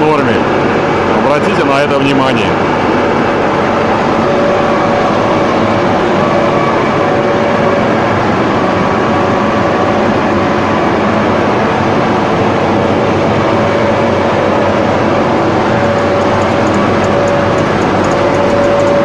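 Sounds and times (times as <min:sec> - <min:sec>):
sanding machine running: 0:13.0 - 0:19.0.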